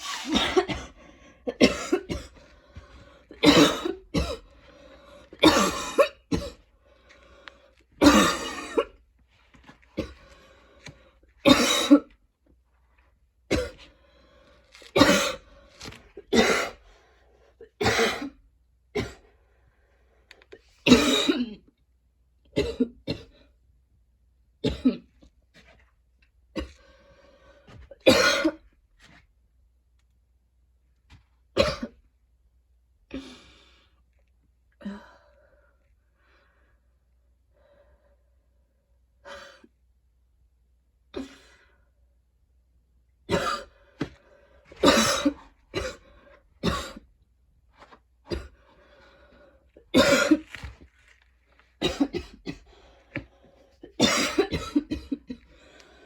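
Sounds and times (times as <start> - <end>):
woman coughing: 0.0 - 2.4, 3.4 - 4.5, 5.4 - 6.6, 8.0 - 9.0, 11.5 - 12.1, 15.0 - 15.4, 17.8 - 18.4, 20.9 - 21.7, 22.6 - 23.3, 28.1 - 28.6, 43.3 - 43.7, 44.8 - 46.0, 46.6 - 47.0, 49.9 - 50.4, 51.8 - 52.7, 53.8 - 55.5.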